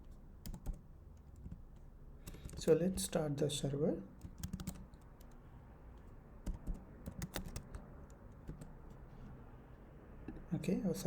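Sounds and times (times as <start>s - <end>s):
typing on computer keyboard: 0.4s - 3.1s, 4.2s - 5.4s, 6.4s - 9.0s.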